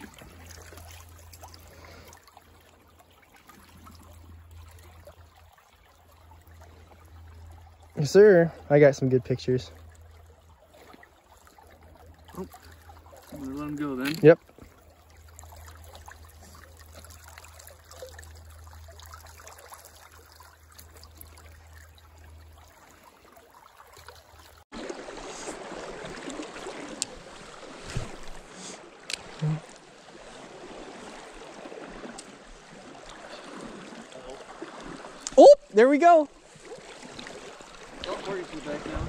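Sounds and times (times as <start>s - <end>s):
close rush of water: 0.0s - 5.1s, 12.1s - 14.7s, 15.3s - 39.0s
creek water flowing: 0.0s - 39.0s.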